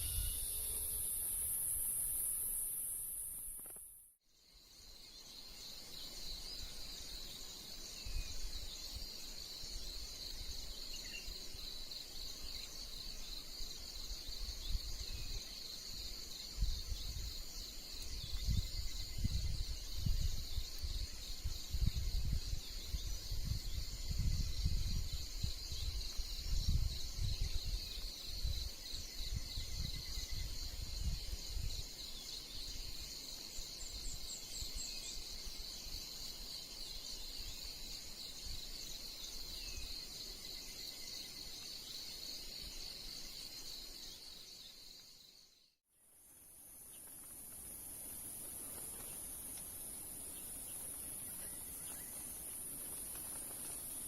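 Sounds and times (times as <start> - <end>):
insect chorus buzzing: 0.0 - 54.0
wind buffeting microphone: 18.1 - 31.9.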